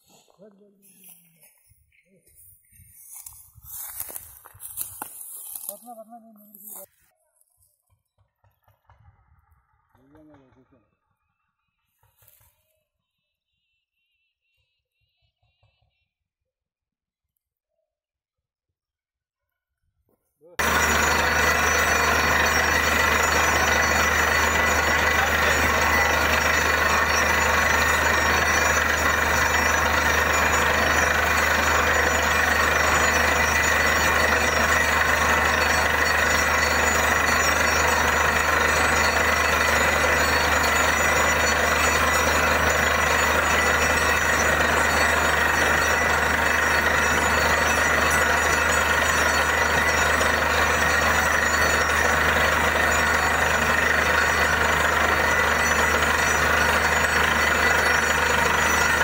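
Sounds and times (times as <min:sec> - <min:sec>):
heavy engine and compressor drone: 0:08.2 - 0:12.6, 0:20.6 - 0:59.0
drill hammer rattling: 0:20.6 - 0:59.0.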